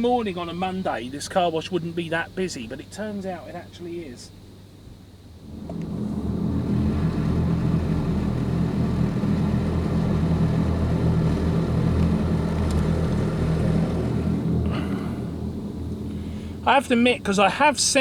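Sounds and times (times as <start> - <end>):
high-pressure pump humming: 5.4 - 16.7
water jets spraying car: 5.6 - 14.6.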